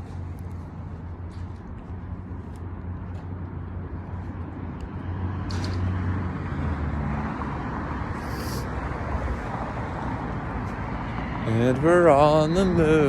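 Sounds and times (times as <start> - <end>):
road noise: 0.0 - 13.0
short high hiss: 8.2 - 8.7.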